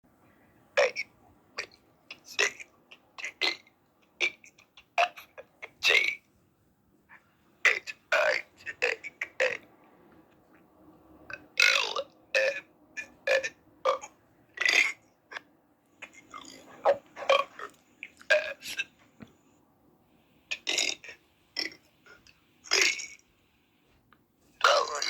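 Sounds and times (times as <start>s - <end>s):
person burping: 20.6s - 21.8s, 22.7s - 23.2s, 24.6s - 25.0s.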